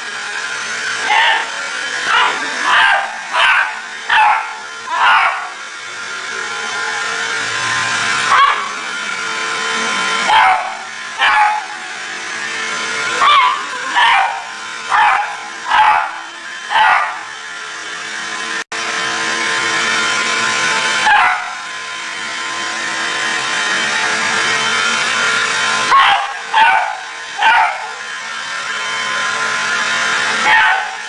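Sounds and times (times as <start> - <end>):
vacuum cleaner humming: 0.0 - 31.0
dog barking: 2.1 - 5.5, 8.3 - 8.7, 10.2 - 11.8, 13.2 - 17.2, 21.0 - 21.6, 25.9 - 27.9, 30.4 - 31.0.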